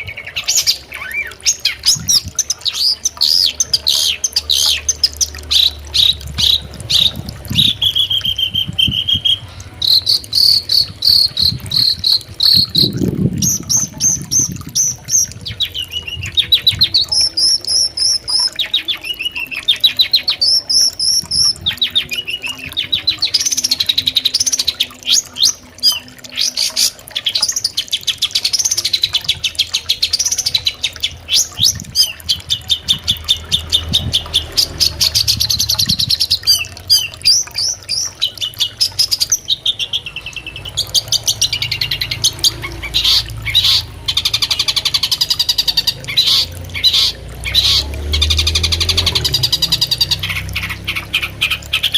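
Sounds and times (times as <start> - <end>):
shrike chattering song: 0.0 - 51.9.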